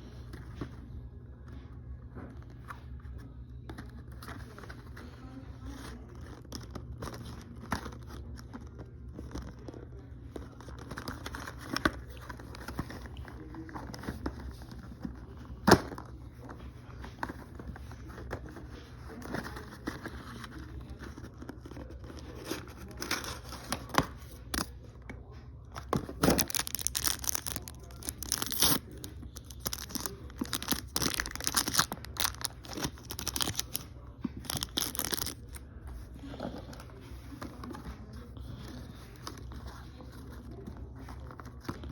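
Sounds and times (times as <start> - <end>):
packaging clicking and rustling: 25.8 - 33.8, 34.4 - 35.6
packaging crinkling and tearing: 25.9 - 35.7.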